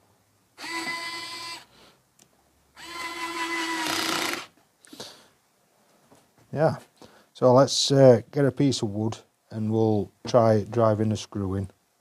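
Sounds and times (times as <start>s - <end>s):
cordless screwdriver motor whirring: 0.6s - 1.7s, 2.8s - 4.5s.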